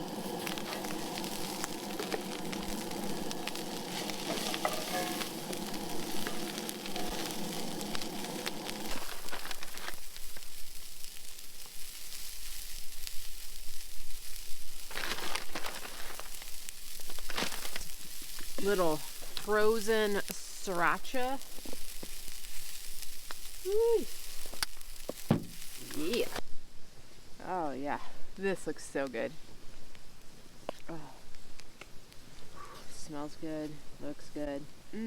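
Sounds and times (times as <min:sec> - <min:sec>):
food sizzling in a frying pan: 0:00.0 - 0:26.4.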